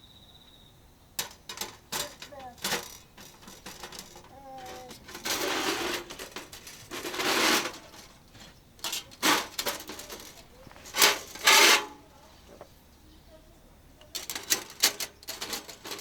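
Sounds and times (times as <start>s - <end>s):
rubbing on an iron griddle: 1.6s - 12.5s, 14.2s - 16.0s.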